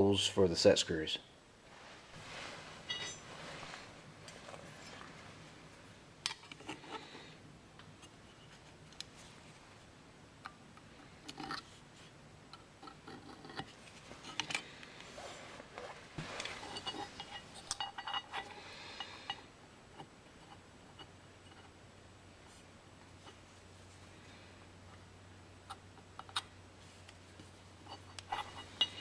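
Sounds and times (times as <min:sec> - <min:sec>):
metallic clinking and clatter: 0:02.8 - 0:03.4, 0:16.5 - 0:19.4, 0:27.8 - 0:29.0
metal tools clicking and tapping: 0:16.8 - 0:19.4, 0:27.8 - 0:29.0.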